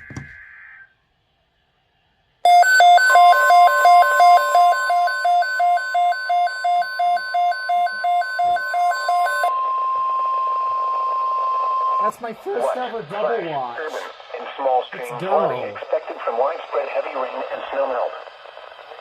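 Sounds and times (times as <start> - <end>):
faint tone: 2.4 - 12.1
alarm beeping: 2.4 - 12.9
steady alert tone: 2.5 - 9.8.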